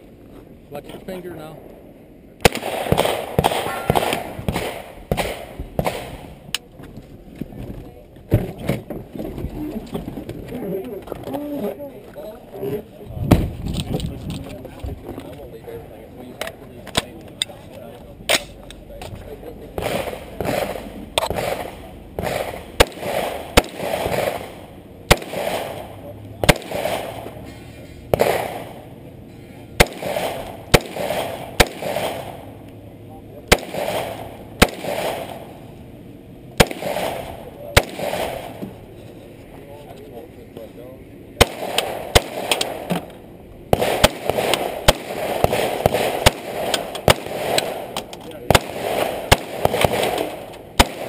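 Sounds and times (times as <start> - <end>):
gunshots with echo: 2.4 - 6.4, 19.8 - 27.5, 28.1 - 28.9, 29.8 - 32.6, 33.5 - 35.6, 36.6 - 38.6, 41.4 - 43.1, 43.7 - 51.0.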